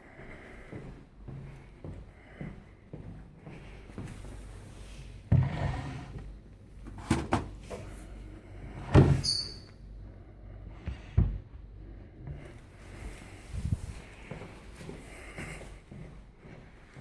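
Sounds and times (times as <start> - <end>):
door opening and shutting: 8.8 - 9.7, 10.8 - 11.6
high squeak: 9.2 - 9.7.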